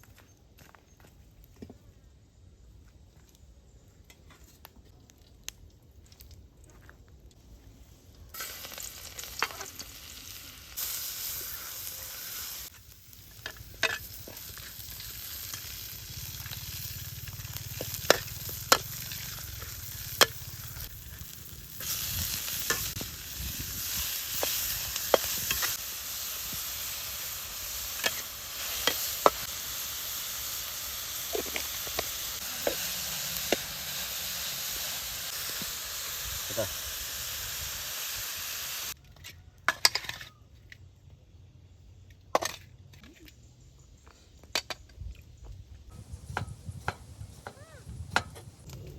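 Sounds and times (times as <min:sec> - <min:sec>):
food sizzling in a pan: 0:08.3 - 0:39.0.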